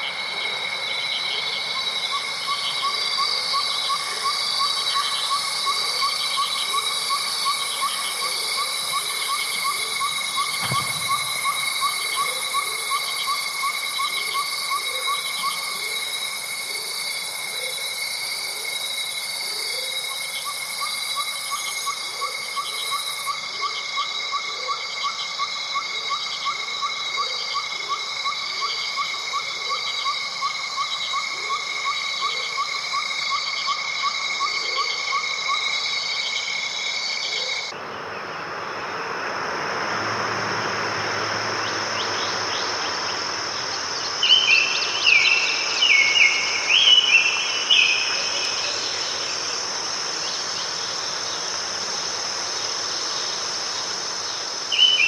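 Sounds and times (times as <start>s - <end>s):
insects trilling and chirping: 0.0s - 55.0s
steady high insect drone: 0.0s - 55.0s
soft noise wash: 37.8s - 54.8s
bird song: 41.4s - 49.6s, 52.8s - 55.0s.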